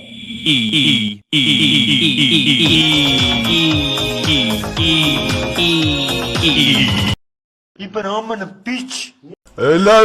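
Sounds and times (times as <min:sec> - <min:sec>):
steady high tone: 0:00.0 - 0:07.2.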